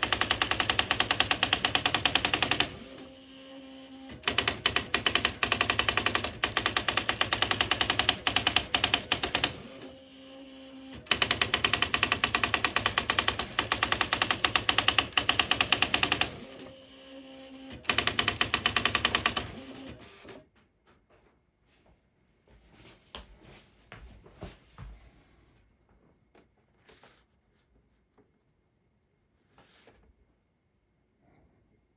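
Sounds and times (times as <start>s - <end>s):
typewriter motor hum: 0.0s - 20.4s.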